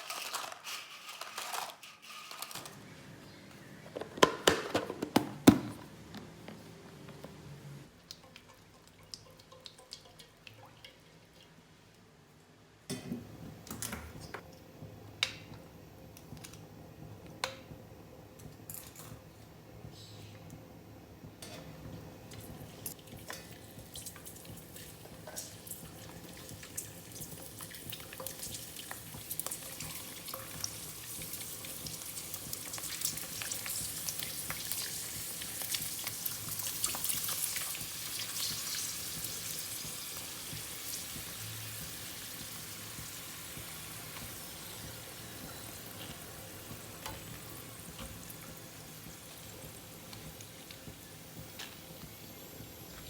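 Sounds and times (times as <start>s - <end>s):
crackers deep-frying in oil: 21.2s - 53.0s.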